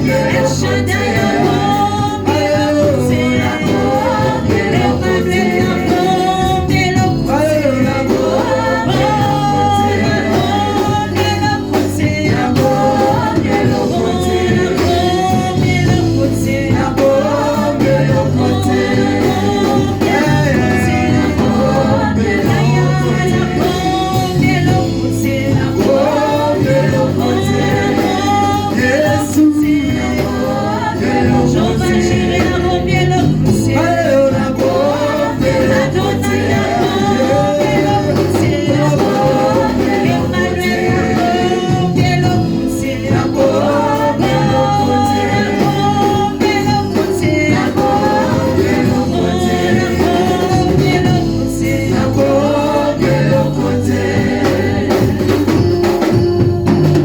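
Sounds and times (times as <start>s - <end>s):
band accompaniment: 0.0s - 57.0s
choir singing gospel: 0.0s - 57.0s
steady bass line: 0.0s - 57.0s.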